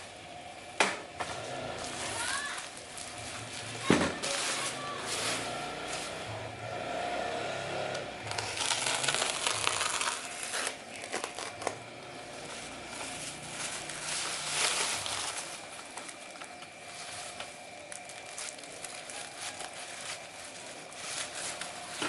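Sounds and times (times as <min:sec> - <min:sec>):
packaging crinkling: 0:01.8 - 0:05.3, 0:08.2 - 0:22.0.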